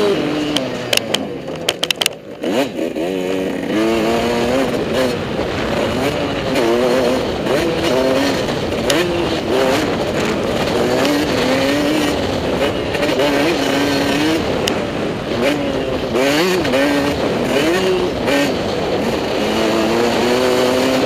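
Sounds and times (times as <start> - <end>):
motocross bike engine revving: 0.0 - 21.0
sharp clicks: 0.5 - 2.4.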